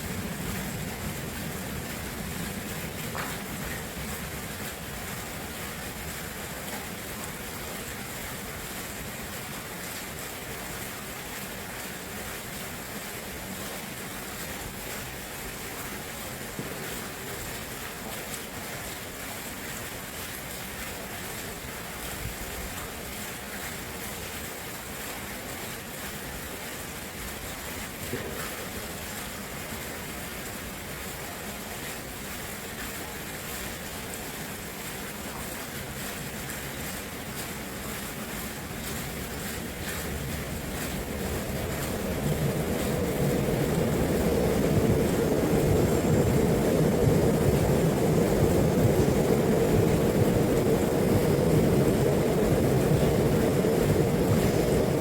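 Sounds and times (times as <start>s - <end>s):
water rushing: 0.0s - 55.0s
water splashes: 0.0s - 55.0s.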